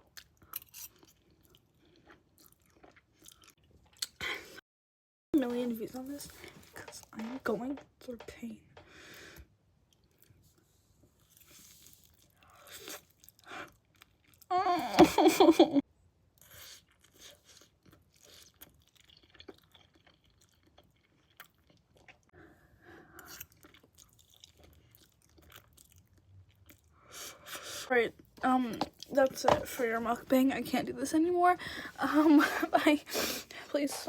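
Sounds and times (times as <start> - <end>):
close chewing and mouth noises: 0.0 - 4.2, 9.3 - 14.5, 16.3 - 30.3.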